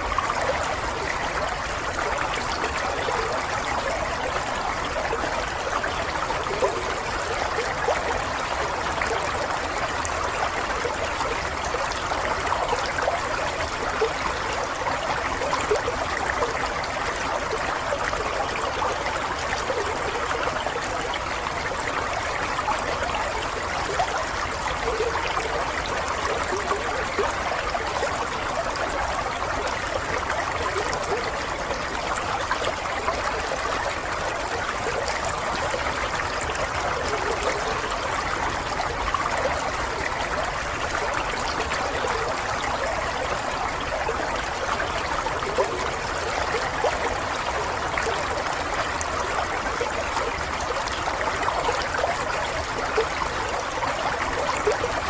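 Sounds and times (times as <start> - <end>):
water babbling and splashing: 0.0 - 55.0.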